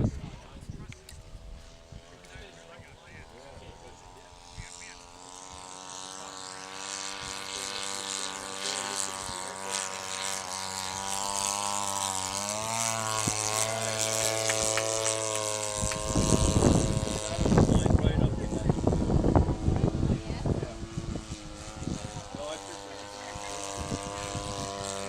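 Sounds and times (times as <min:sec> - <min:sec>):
wind rumble on microphone: 0:00.0 - 0:05.8, 0:11.0 - 0:25.0
model plane engine droning: 0:00.0 - 0:25.0.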